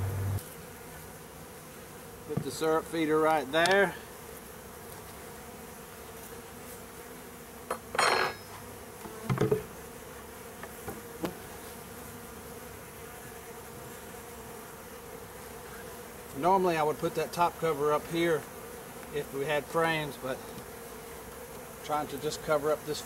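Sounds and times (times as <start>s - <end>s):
bees buzzing in hive: 0.0s - 23.0s
knock: 9.2s - 9.7s.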